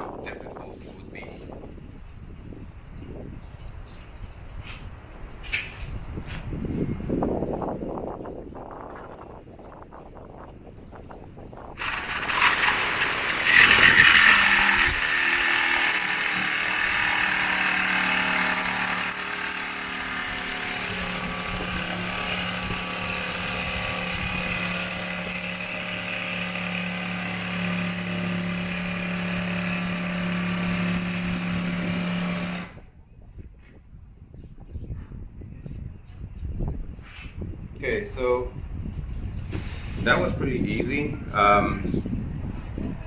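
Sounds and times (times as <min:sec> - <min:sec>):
jigsaw cutting plywood: 0:11.8 - 0:32.8.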